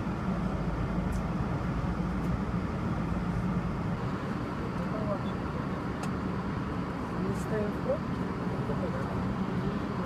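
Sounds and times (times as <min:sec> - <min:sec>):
vehicle engine idling inside cabin: 0:00.0 - 0:10.0.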